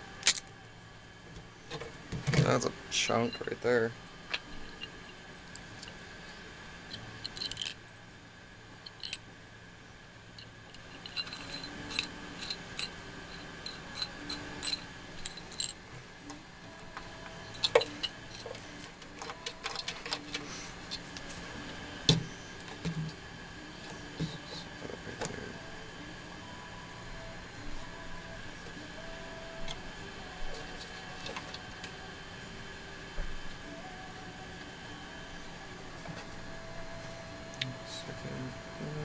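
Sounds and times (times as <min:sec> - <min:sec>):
small hard parts clicking and rattling: 0:06.9 - 0:07.8, 0:08.8 - 0:09.2, 0:10.4 - 0:15.8.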